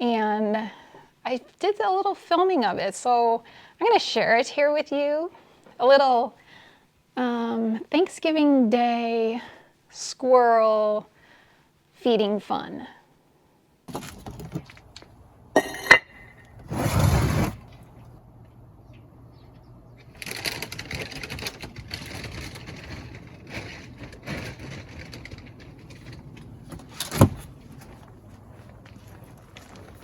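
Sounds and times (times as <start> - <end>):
handling noise: 20.0 - 30.0
crunching footsteps: 27.4 - 30.0.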